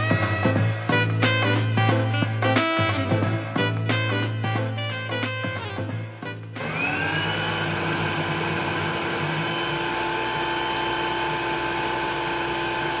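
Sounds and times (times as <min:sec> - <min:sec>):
vacuum cleaner motor whining: 0:06.6 - 0:13.0.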